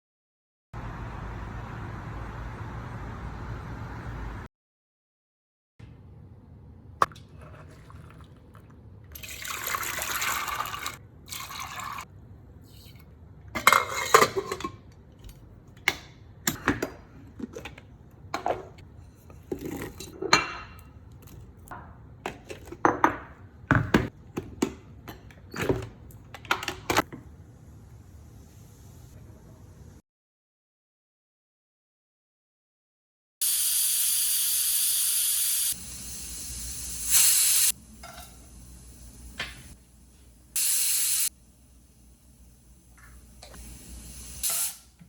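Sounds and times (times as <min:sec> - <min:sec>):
water pouring: 0:07.1 - 0:12.1
pots and utensils clinking: 0:13.6 - 0:15.3, 0:16.5 - 0:27.1, 0:38.0 - 0:38.5.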